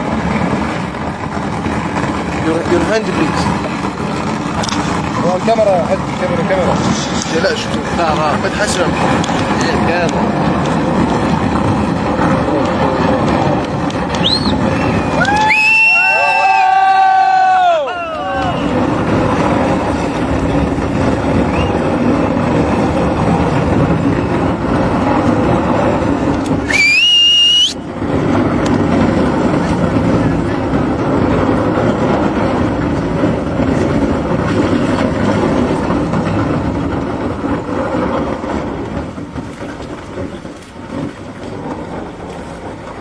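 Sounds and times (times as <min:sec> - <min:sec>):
loud machinery noise: 0:00.0 - 0:43.0
shrill whistle blast: 0:14.2 - 0:16.8, 0:21.5 - 0:21.8, 0:26.6 - 0:27.8
crowd cheering and shouting: 0:14.5 - 0:19.1.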